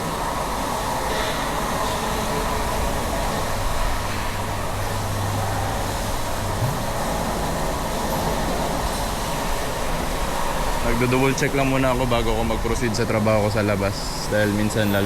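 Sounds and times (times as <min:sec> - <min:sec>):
machinery rumble: 0:00.0 - 0:15.0.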